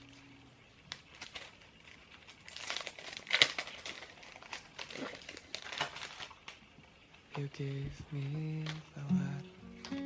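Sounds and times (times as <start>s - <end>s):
packaging crinkling: 0.0s - 7.1s.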